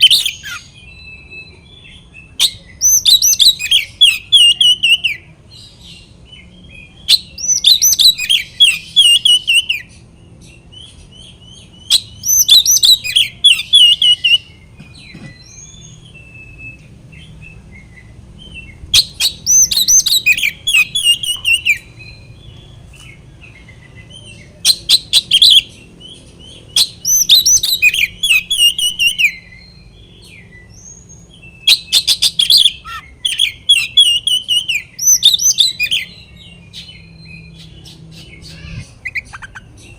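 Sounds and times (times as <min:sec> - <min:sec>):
bird singing whistled phrases: 0:00.0 - 0:05.2, 0:06.5 - 0:09.9, 0:10.8 - 0:22.3, 0:23.9 - 0:39.9.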